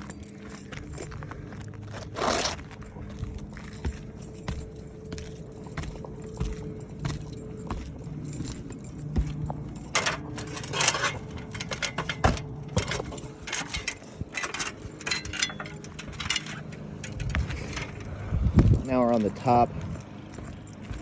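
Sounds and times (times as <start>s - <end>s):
metallic clinking and rattling: 0.0s - 1.5s, 2.1s - 21.0s
scuffs and knocks on ladder: 5.8s - 18.0s.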